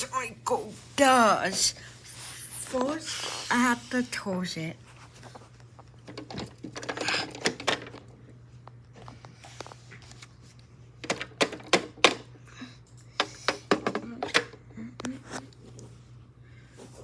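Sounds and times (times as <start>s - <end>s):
plastic toy clicks and knocks: 11.0s - 12.3s.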